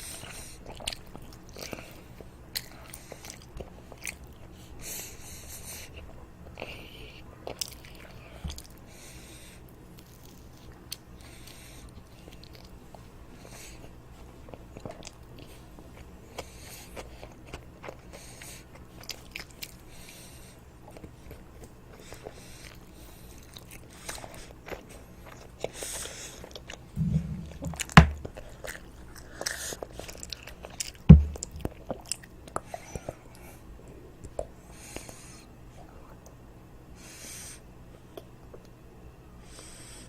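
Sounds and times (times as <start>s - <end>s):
child chewing crunchy toast: 0.0s - 36.4s
heavy dull thumps: 27.0s - 28.4s, 31.1s - 31.6s.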